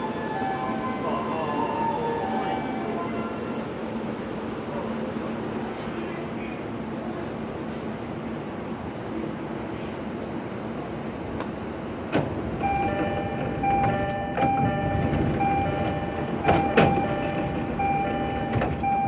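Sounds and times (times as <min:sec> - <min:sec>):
train doors knocking shut: 0:11.4 - 0:19.0
door chime beeping: 0:12.6 - 0:19.0.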